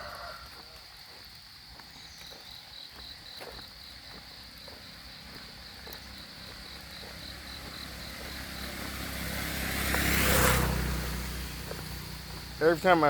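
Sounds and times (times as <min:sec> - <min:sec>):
crickets chirping: 0:00.0 - 0:13.0
vehicle passing: 0:04.2 - 0:13.0.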